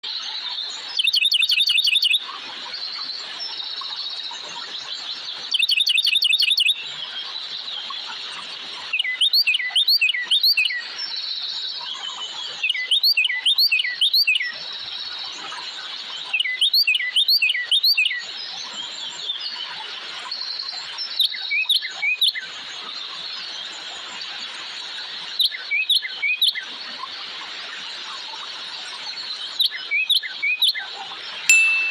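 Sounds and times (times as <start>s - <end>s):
high-pitched bird chorus: 0.1s - 24.3s
birds chirping: 31.4s - 31.9s.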